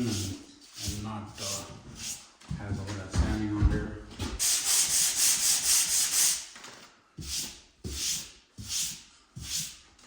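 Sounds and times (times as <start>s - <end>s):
sandpaper scrubbing drywall: 0.0s - 2.3s, 4.4s - 6.5s, 7.2s - 9.9s.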